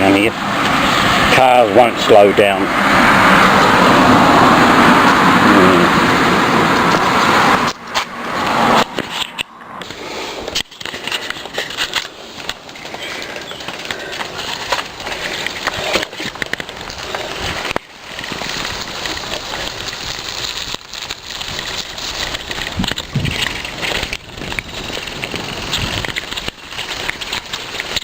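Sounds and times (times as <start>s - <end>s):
wind on microphone: 2.6s - 9.0s, 18.4s - 28.0s.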